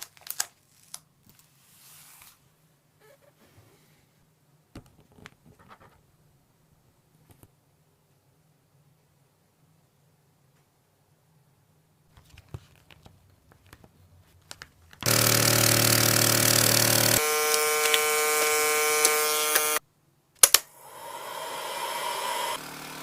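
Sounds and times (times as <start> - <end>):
power tool motor running: 15.0 - 19.8, 20.8 - 23.0
sharp clicks: 17.0 - 19.8, 20.4 - 20.7.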